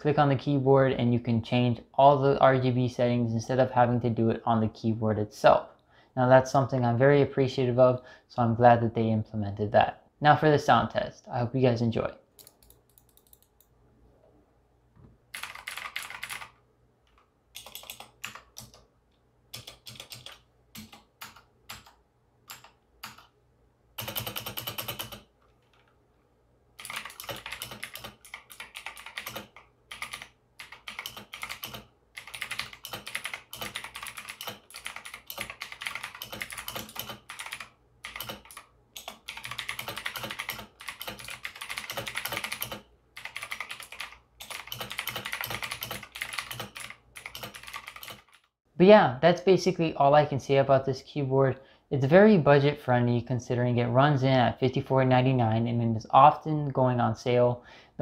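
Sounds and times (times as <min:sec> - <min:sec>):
mechanical keyboard typing: 0:12.4 - 0:13.6, 0:15.3 - 0:18.9, 0:19.5 - 0:23.3, 0:24.0 - 0:25.9, 0:26.8 - 0:48.5.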